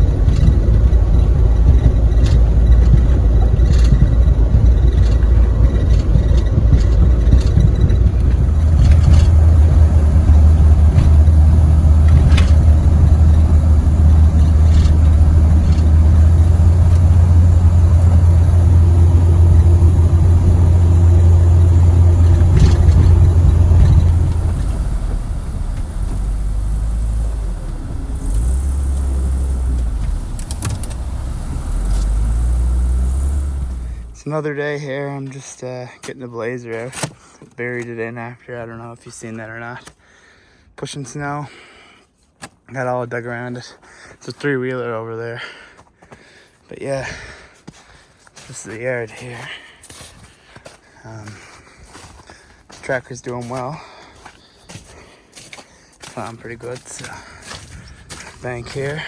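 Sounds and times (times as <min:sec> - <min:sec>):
vehicle engine and road rumble: 0:00.0 - 0:34.4, 0:56.6 - 0:59.0
scattered clicks: 0:23.8 - 0:34.2.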